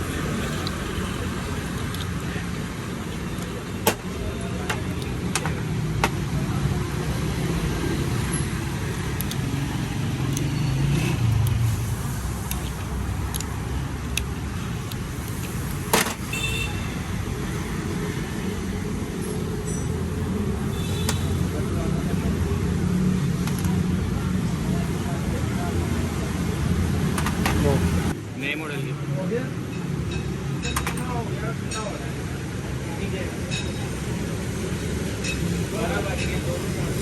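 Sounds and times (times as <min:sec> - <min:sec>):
sharp metallic clicks: 0:12.3 - 0:16.3.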